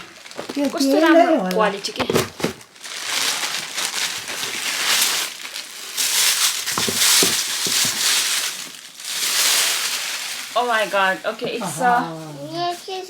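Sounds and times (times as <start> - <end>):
packaging rustling and crinkling: 0.0 - 13.0.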